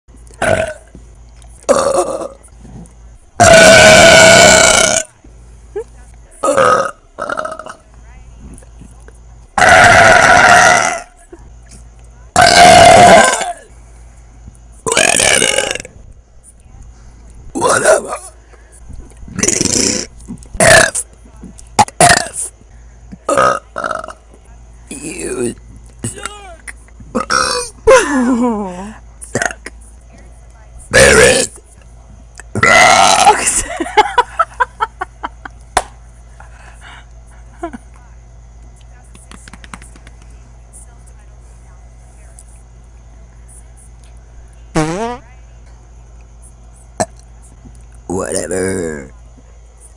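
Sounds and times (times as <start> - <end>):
woman belching: 0.4 - 0.9, 1.7 - 2.4, 3.4 - 5.1, 6.4 - 7.8, 9.6 - 11.2, 12.4 - 13.7, 14.9 - 15.9, 17.6 - 18.3, 19.3 - 21.0, 21.8 - 22.4, 23.3 - 24.2, 27.1 - 29.7, 30.9 - 31.6, 32.4 - 34.1, 47.0 - 47.2.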